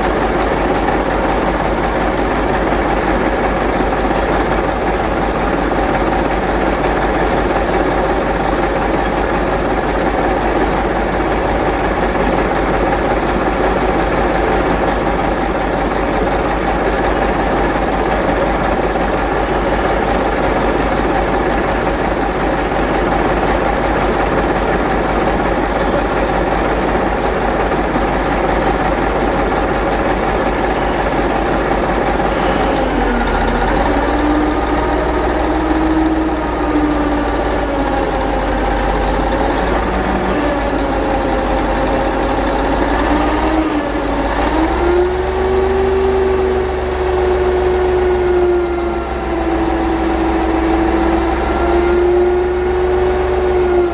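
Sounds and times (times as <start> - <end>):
heavy truck engine revving: 0.0 - 53.9.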